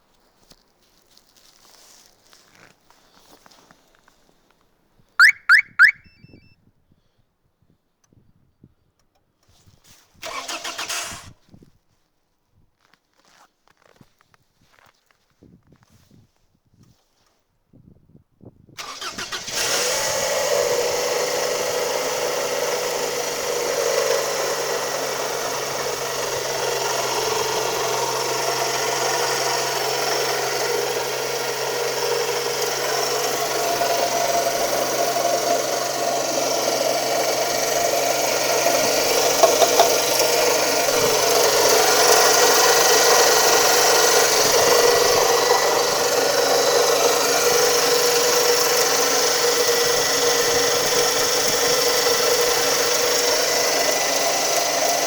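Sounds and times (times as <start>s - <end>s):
car engine running: 19.1s - 55.0s
grinding ringing engine noise: 21.6s - 55.0s.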